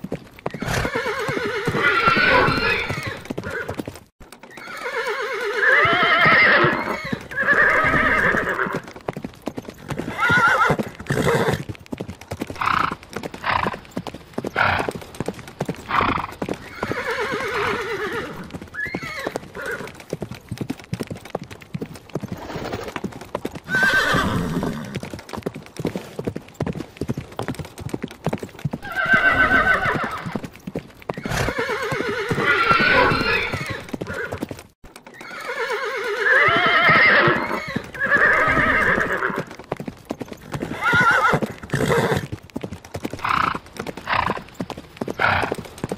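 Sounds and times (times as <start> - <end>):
hooves clip-clopping: 0.0 - 45.9
horses whinnying: 0.4 - 9.0, 9.6 - 11.7, 12.4 - 20.1, 22.2 - 25.1, 28.7 - 30.5, 31.1 - 39.7, 40.3 - 42.3, 43.1 - 45.7.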